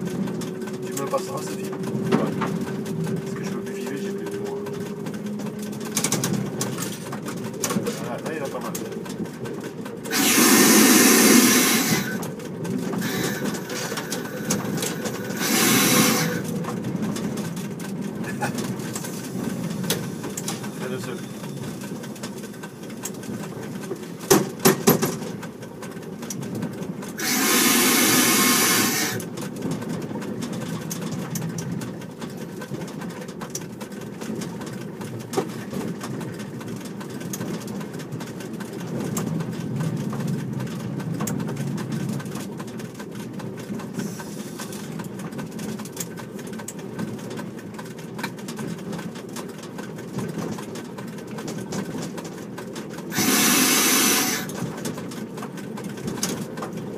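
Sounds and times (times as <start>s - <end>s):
railcar wheels rumbling on rails: 0.0s - 56.9s
loud hiss: 10.1s - 12.2s, 13.0s - 16.4s, 27.2s - 29.2s, 53.1s - 54.5s.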